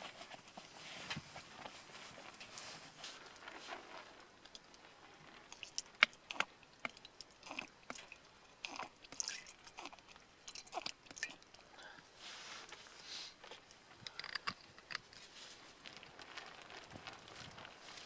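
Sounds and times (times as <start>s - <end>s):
person chewing and biting: 5.6s - 11.4s.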